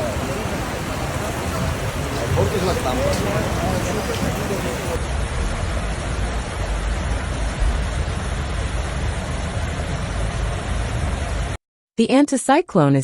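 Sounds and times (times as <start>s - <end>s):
rushing water with deep rumble: 0.0s - 11.6s.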